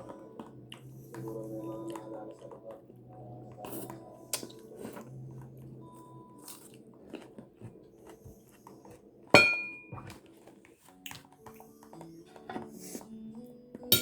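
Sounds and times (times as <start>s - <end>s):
chewing and crunching food: 0.0s - 9.3s
sharp ringing clink: 9.4s - 9.9s.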